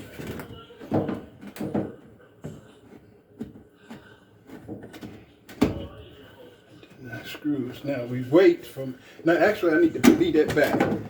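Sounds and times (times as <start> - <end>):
plastic parts knocking and clicking: 0.0 - 2.6, 10.0 - 11.0.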